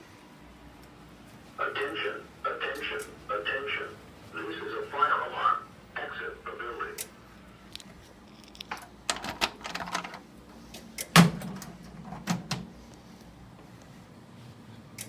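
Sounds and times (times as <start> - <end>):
sharp clicks and knocks: 7.8 - 12.8.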